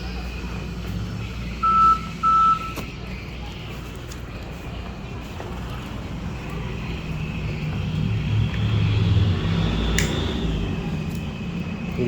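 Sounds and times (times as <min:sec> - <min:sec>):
vehicle engine rumbling: 0:00.0 - 0:12.0
sharp click: 0:10.0 - 0:10.2.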